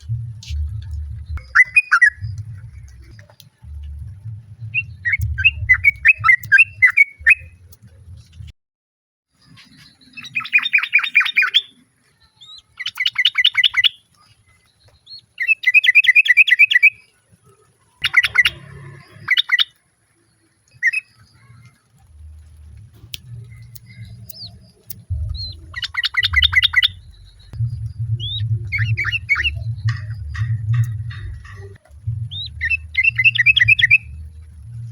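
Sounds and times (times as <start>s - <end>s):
low rumble: 0.0s - 8.5s, 22.0s - 34.9s
birds chattering: 9.4s - 11.8s, 18.0s - 22.0s, 23.2s - 34.9s
bird whistles: 25.4s - 27.5s, 28.2s - 30.2s, 32.2s - 34.2s.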